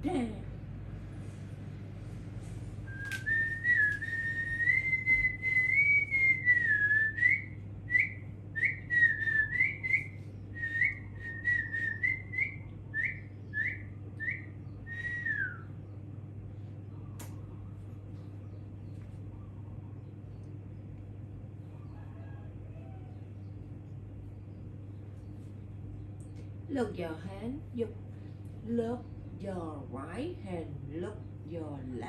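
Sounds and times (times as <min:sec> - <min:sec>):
person whistling: 0:02.9 - 0:15.6.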